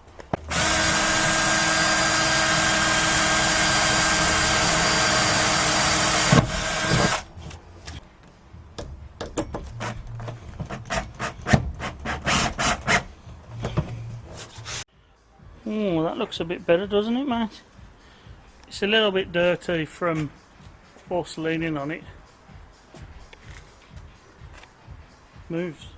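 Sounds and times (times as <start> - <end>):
power drill drilling: 0.5 - 7.3.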